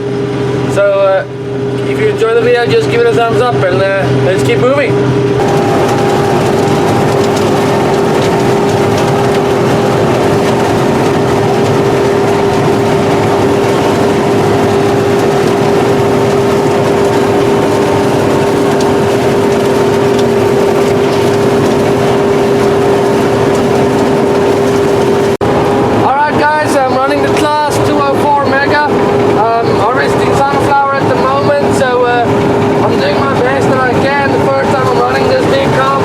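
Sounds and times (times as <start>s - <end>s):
combine harvester engine whining: 0.0s - 36.0s.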